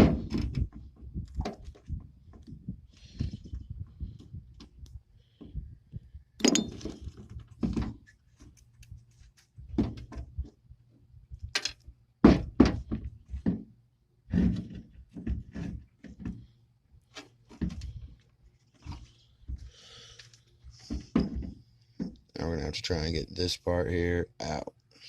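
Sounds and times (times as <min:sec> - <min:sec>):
metal clunks and knocks: 0:06.4 - 0:08.0, 0:12.2 - 0:13.7, 0:20.8 - 0:22.2.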